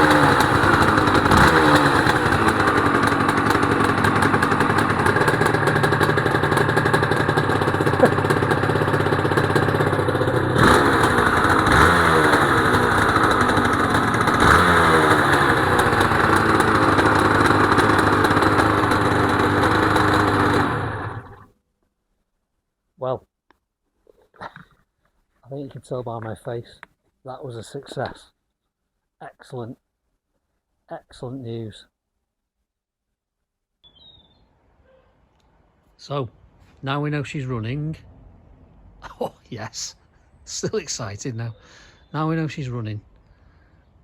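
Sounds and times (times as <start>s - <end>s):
motorcycle engine revving: 0.0s - 21.5s.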